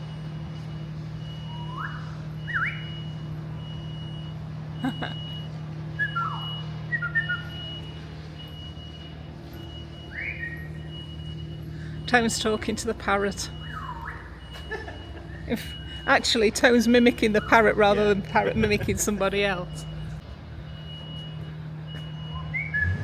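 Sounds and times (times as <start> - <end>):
man whistling: 6.0 - 7.7.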